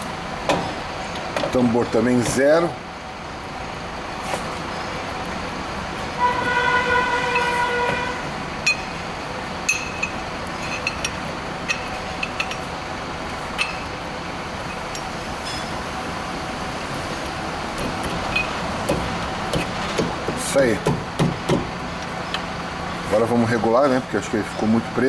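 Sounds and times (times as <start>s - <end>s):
workshop background noise: 0.0s - 25.0s
car horn: 6.1s - 8.5s.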